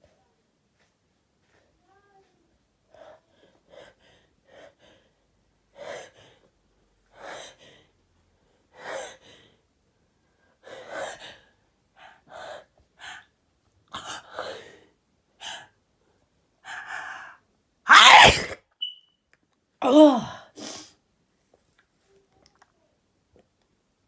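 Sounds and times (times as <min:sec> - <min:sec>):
person gasping in sneezing fit: 0:16.7 - 0:18.6.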